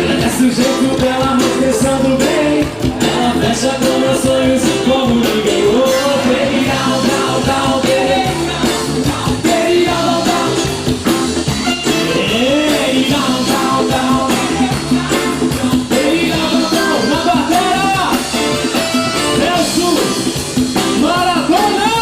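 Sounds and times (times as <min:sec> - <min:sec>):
live pop-rock band playing: 0:00.0 - 0:22.0.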